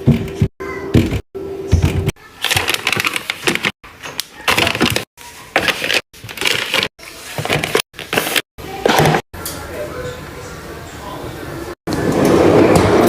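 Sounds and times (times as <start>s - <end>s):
crinkling plastic packaging: 2.3s - 3.8s, 4.5s - 8.4s.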